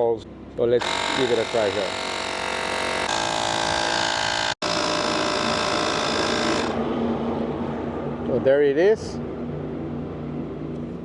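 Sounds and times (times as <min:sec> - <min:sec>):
electric compressor buzzing: 0:00.8 - 0:07.0.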